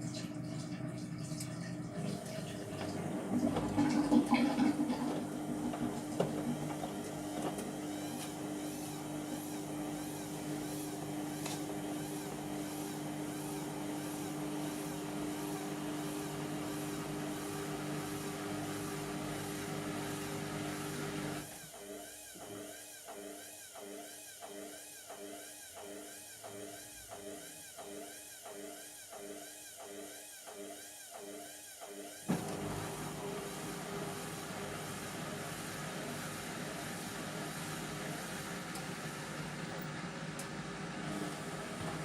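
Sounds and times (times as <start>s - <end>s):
washing machine drum motor humming: 0.0s - 23.3s, 32.3s - 42.0s.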